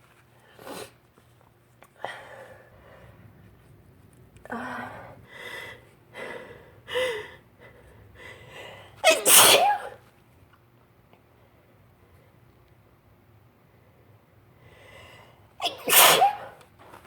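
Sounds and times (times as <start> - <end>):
person sneezing: 9.0 - 10.0, 15.6 - 16.6.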